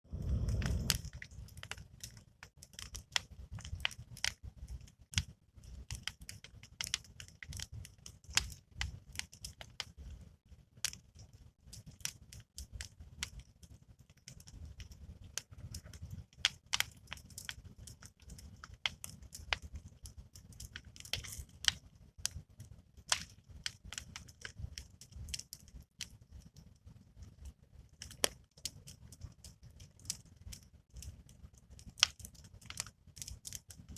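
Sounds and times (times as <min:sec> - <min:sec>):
low steady rumble: 0:00.0 - 0:02.5
campfire crackling: 0:00.0 - 0:33.9.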